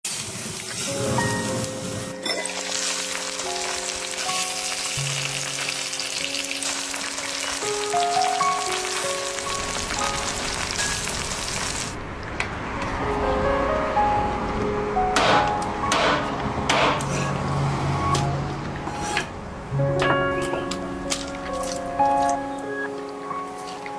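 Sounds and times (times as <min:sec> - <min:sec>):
food sizzling in hot oil: 0:00.0 - 0:12.0
background music with held notes: 0:00.8 - 0:11.7, 0:12.9 - 0:23.9.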